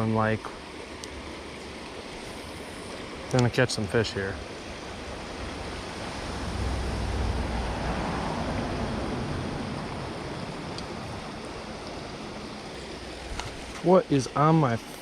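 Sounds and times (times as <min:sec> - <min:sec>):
low rumble: 0:05.4 - 0:11.3.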